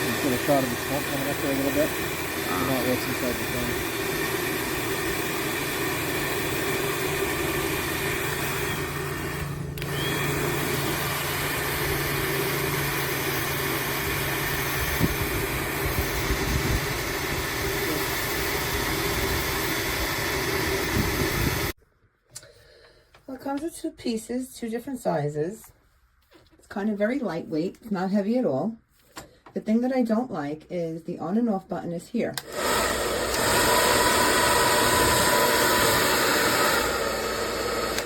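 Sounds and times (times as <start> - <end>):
hair dryer blowing: 0.0 - 21.8, 32.4 - 38.0.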